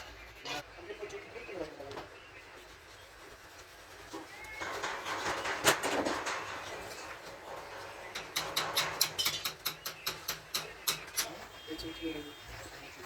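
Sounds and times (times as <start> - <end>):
scraping rub on metal parts: 3.0 - 11.6.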